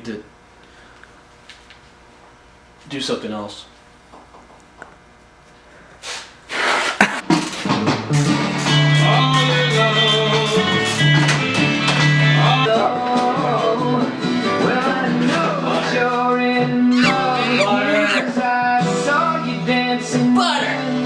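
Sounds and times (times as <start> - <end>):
blues rock song with singing: 8.2 - 21.0.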